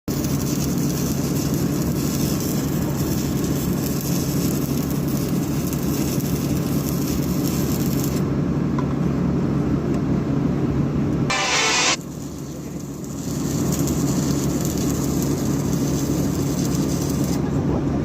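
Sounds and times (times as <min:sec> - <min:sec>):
heavy machinery running: 0:11.3 - 0:12.1.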